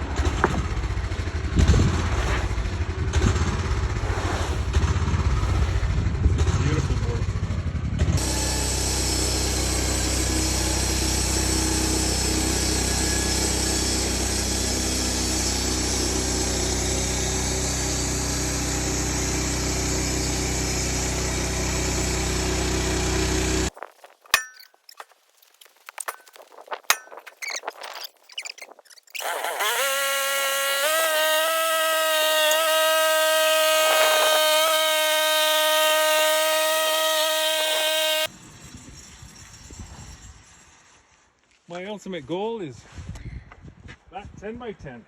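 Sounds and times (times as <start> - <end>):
blade cutting through log: 0.0 - 7.2, 8.0 - 38.3
engine revving: 0.0 - 23.7, 29.1 - 38.3
sawmill engine running: 0.0 - 23.7, 29.1 - 38.9.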